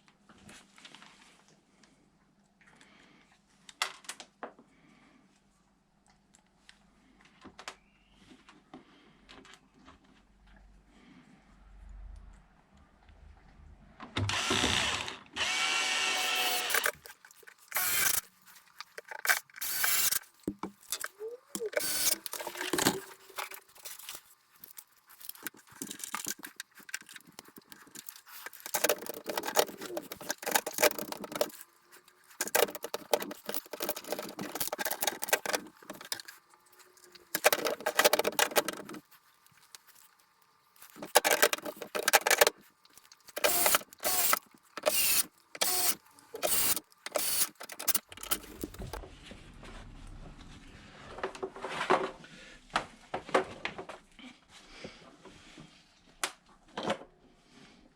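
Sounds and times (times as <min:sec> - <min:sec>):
power screwdriver whine: 0:14.2 - 0:17.0, 0:17.8 - 0:18.2, 0:19.6 - 0:20.2, 0:21.7 - 0:22.2, 0:43.4 - 0:49.0
ratchety clicking and rattling: 0:43.4 - 0:49.0.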